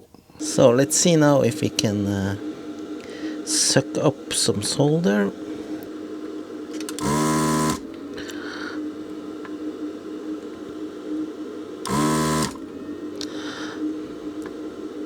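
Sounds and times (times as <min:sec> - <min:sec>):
vacuum pump sucking bursts: 0:07.0 - 0:08.0, 0:11.8 - 0:12.7.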